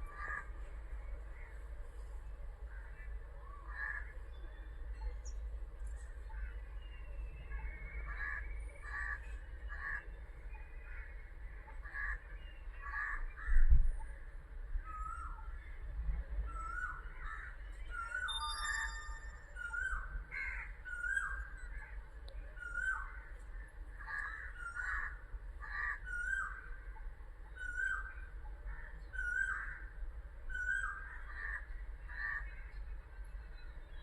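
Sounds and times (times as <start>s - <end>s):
birds giving crow-like calls: 0.1s - 0.6s, 2.7s - 4.2s, 8.0s - 10.2s, 10.8s - 13.7s, 16.5s - 22.0s, 22.6s - 26.8s, 27.5s - 32.8s
high electronic tones: 18.3s - 19.5s.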